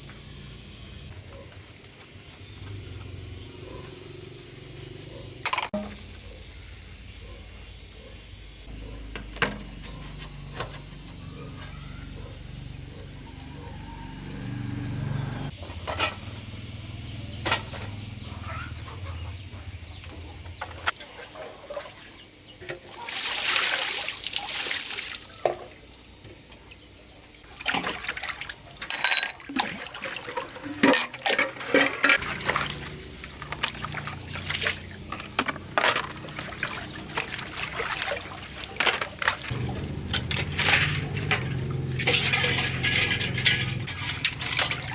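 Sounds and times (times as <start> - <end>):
pots and utensils clinking: 5.4 - 6.1, 28.8 - 29.6, 30.2 - 44.9
water pouring and splashing: 20.9 - 26.7, 27.4 - 44.9.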